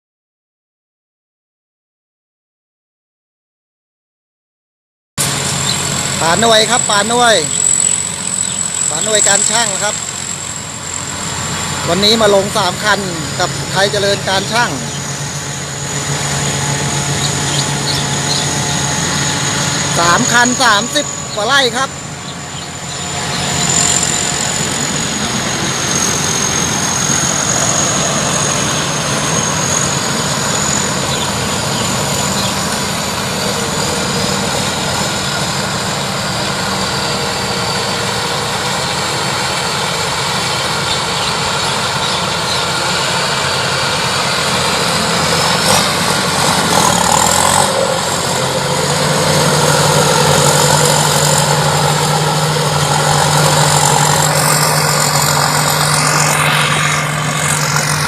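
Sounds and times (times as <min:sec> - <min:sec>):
combine harvester running: 0:05.2 - 0:58.0.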